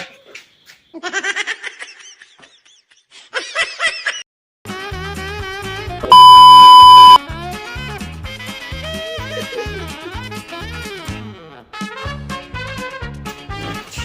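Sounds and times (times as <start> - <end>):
high censor beep: 6.0 - 7.2.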